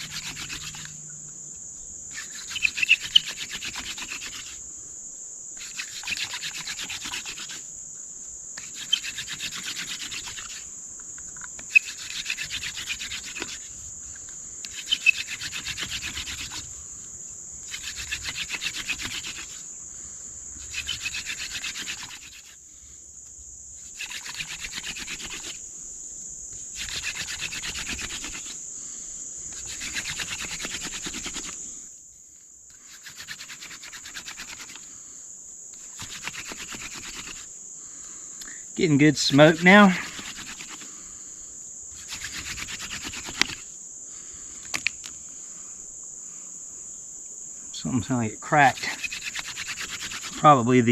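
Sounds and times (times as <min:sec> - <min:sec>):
crickets trilling: 0:00.0 - 0:50.9
squeaky wooden rubbing: 0:14.7 - 0:16.6.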